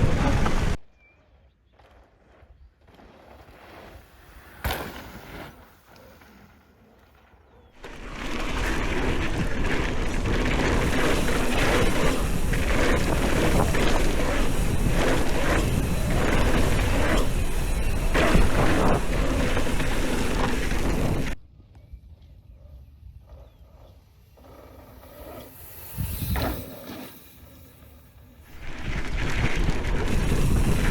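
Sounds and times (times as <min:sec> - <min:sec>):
bike tyre and rattling noise: 0:00.0 - 0:00.8, 0:01.6 - 0:21.4, 0:24.2 - 0:30.9
wind over microphone: 0:00.0 - 0:00.8, 0:07.9 - 0:22.0, 0:25.9 - 0:26.7, 0:28.5 - 0:30.9.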